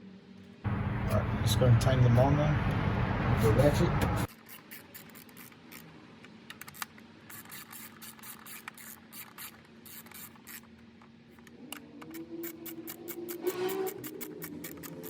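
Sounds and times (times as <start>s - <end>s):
steady low hum: 0.7s - 4.3s
hand ratchet clicking: 6.5s - 10.7s, 12.1s - 15.0s.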